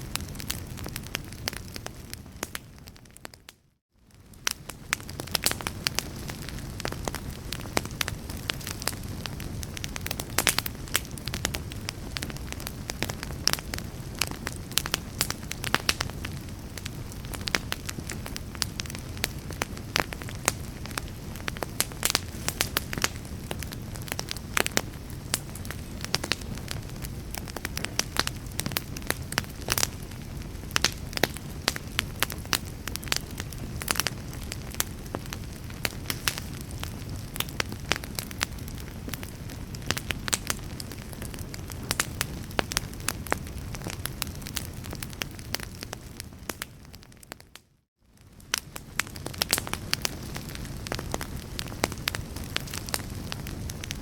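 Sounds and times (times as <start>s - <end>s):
low rumble of flame: 0.0s - 54.0s
wood fire crackling and popping: 0.0s - 54.0s.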